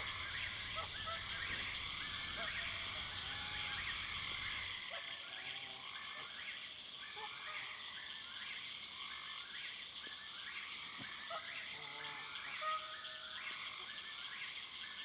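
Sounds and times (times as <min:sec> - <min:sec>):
high-pitched frog chorus: 0:00.0 - 0:06.5
frogs calling: 0:00.0 - 0:09.7.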